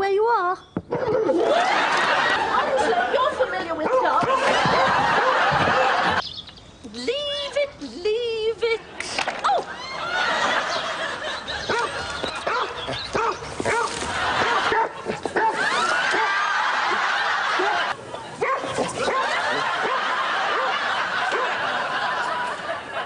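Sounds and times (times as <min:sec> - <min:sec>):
dogs barking and yapping: 0:00.9 - 0:02.4, 0:03.7 - 0:06.2, 0:10.5 - 0:22.2
studio audience laughing: 0:01.2 - 0:03.6, 0:04.3 - 0:06.2, 0:09.8 - 0:13.1, 0:14.0 - 0:23.0.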